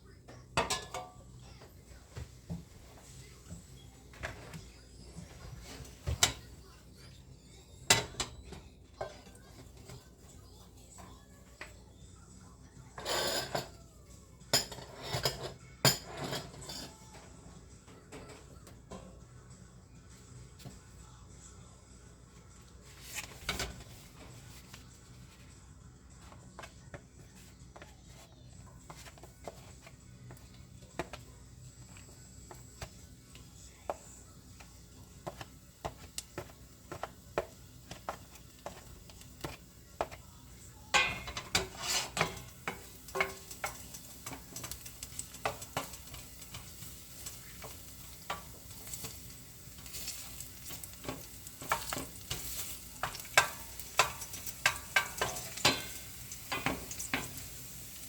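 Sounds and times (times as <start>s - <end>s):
faint sizzle: 0.0s - 58.0s
utensil clicking against pan: 40.9s - 57.4s.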